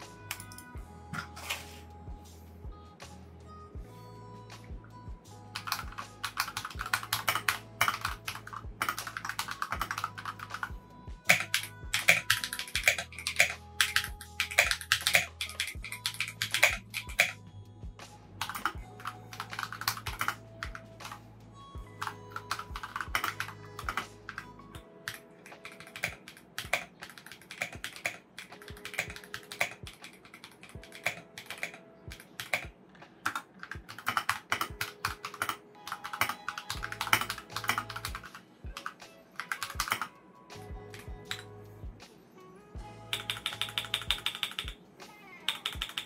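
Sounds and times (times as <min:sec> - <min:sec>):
background music with bass: 0:00.0 - 0:24.9, 0:40.5 - 0:44.4
mechanical keyboard typing: 0:05.6 - 0:17.4, 0:18.4 - 0:21.2, 0:22.0 - 0:40.1, 0:43.1 - 0:44.8, 0:45.4 - 0:46.0.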